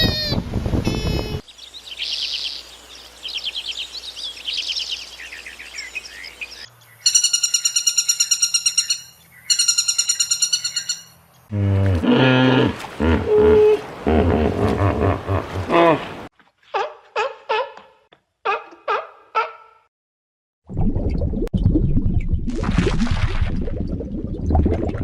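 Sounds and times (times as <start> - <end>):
birds chirping and trilling: 0.0 - 11.6
low-pitched animal call: 11.5 - 16.3.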